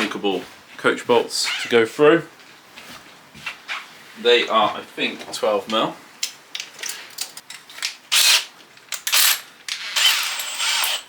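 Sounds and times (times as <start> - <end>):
drill boring through timber: 9.1 - 11.0.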